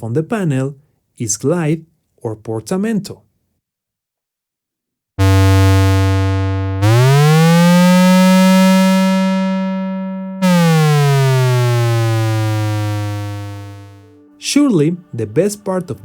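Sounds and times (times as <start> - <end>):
synthesizer gliding notes: 5.2 - 16.0.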